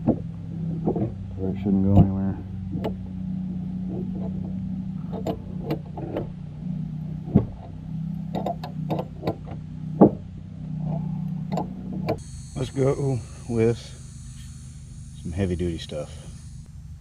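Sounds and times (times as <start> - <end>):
steady low hum: 0.0 - 17.0
hand tools clicking and knocking: 3.8 - 6.4, 7.2 - 10.2, 10.8 - 12.2.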